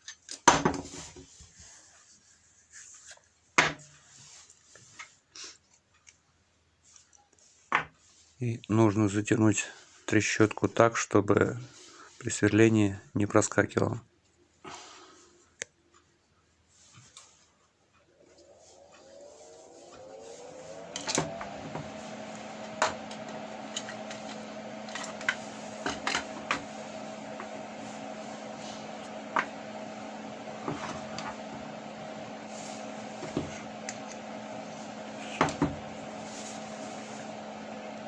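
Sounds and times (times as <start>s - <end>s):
cordless drill motor humming: 18.2s - 38.0s.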